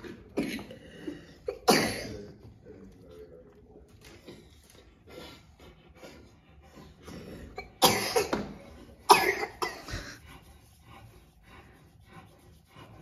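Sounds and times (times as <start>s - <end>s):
person coughing: 0.0s - 2.3s, 7.6s - 10.2s.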